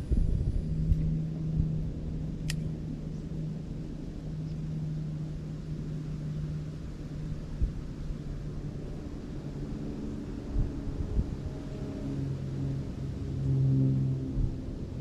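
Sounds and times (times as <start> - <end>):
low rumble: 0.0 - 5.2
low mechanical hum: 0.0 - 15.0.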